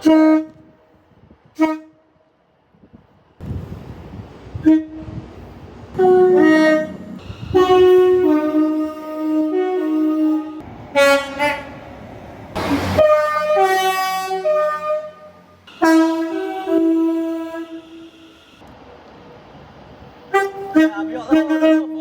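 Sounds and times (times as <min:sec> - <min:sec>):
two-tone train horn blasts: 0:00.0 - 0:02.2, 0:04.5 - 0:05.3, 0:05.9 - 0:11.9, 0:12.6 - 0:18.6, 0:20.3 - 0:22.0.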